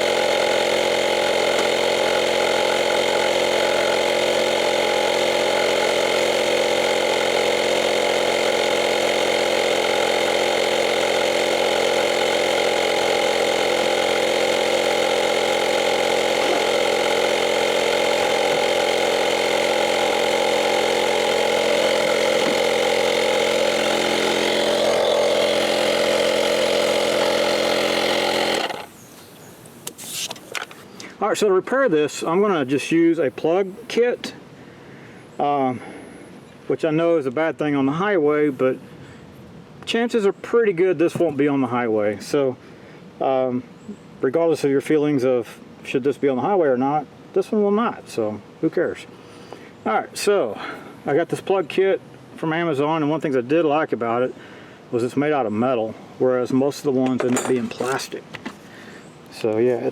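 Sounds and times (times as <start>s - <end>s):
tire inflator compressor running: 0.0s - 30.9s.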